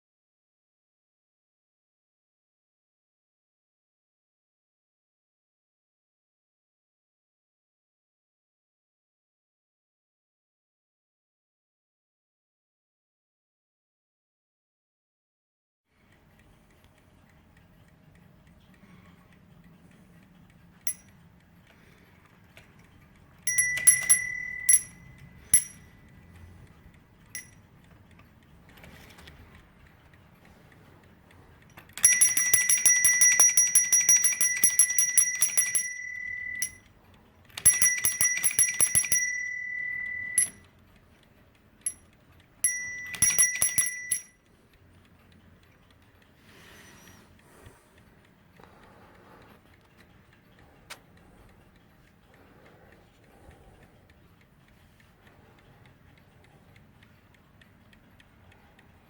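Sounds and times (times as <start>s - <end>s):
alarm clock bell ringing: 23.5s - 26.3s, 27.4s - 27.7s, 32.0s - 36.9s, 37.6s - 40.7s, 41.8s - 44.5s.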